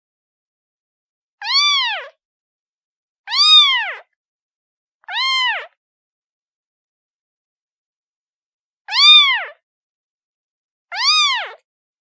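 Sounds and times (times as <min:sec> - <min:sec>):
kitten meowing: 0:01.4 - 0:02.2, 0:03.3 - 0:04.1, 0:05.0 - 0:05.8, 0:08.9 - 0:09.6, 0:10.9 - 0:11.6.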